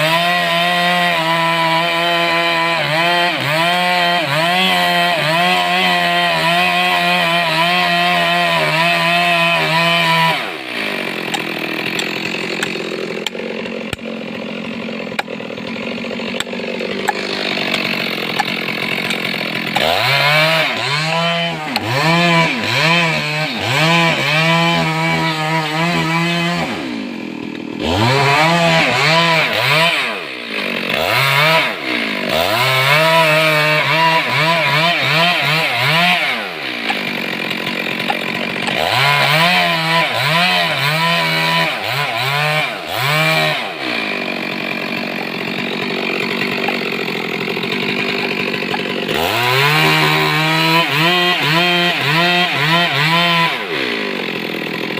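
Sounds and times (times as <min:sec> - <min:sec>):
chainsaw revving: 0:00.0 - 0:54.9.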